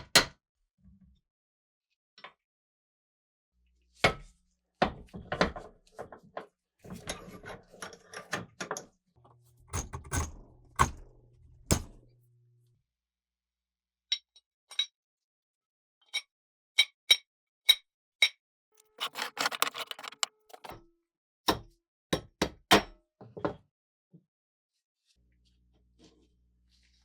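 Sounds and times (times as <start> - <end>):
metallic knocks and clatters: 18.8 - 20.8.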